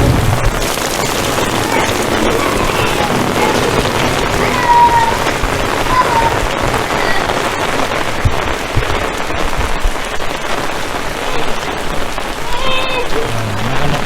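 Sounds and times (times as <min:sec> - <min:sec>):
low thumps: 0:00.0 - 0:10.2
heavy rain falling: 0:00.0 - 0:14.0.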